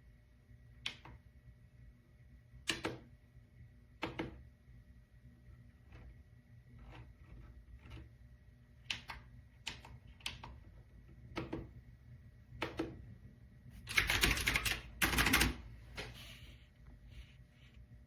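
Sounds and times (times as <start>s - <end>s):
mechanical keyboard typing: 8.8s - 10.6s, 12.6s - 13.0s, 13.8s - 15.7s.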